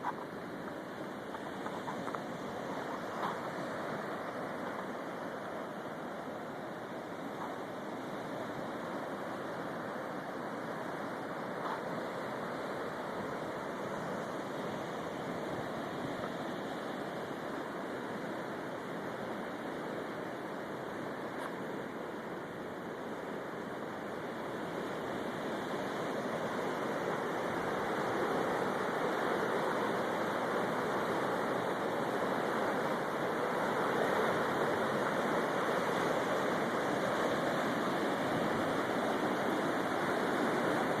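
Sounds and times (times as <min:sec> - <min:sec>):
floodwaters rushing: 0:23.4 - 0:41.0.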